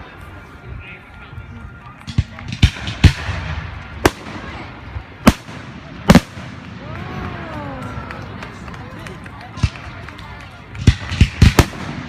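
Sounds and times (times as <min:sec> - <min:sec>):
fireworks bangs: 0:02.1 - 0:08.6, 0:09.5 - 0:12.0.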